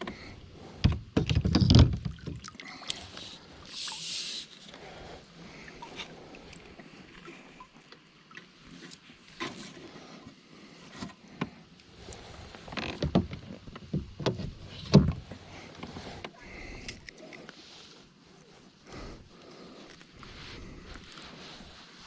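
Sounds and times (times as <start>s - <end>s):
knocks and thumps against kayak: 0.0s - 2.5s, 12.7s - 16.3s.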